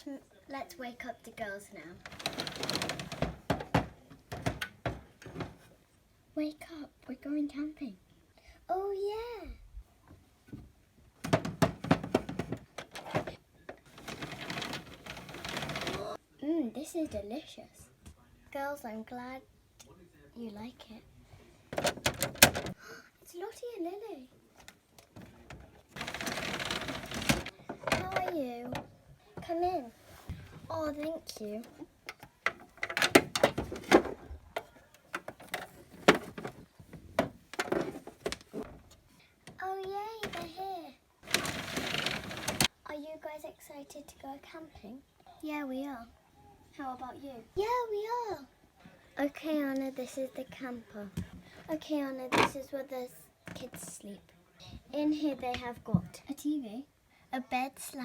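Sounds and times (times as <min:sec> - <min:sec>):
plastic toys clicking and tapping: 0:02.0 - 0:05.5, 0:11.2 - 0:16.2, 0:24.6 - 0:28.9, 0:32.0 - 0:38.6, 0:40.2 - 0:40.6, 0:41.2 - 0:42.7
rustling scrape: 0:13.9 - 0:16.2, 0:25.9 - 0:28.2, 0:29.8 - 0:31.0, 0:41.2 - 0:42.7.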